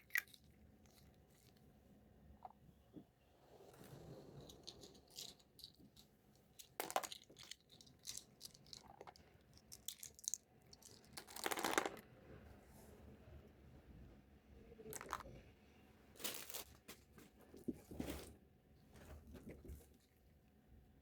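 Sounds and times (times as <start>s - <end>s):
plastic toy pieces clicking: 6.6s - 12.0s
packaging crinkling: 16.2s - 17.1s.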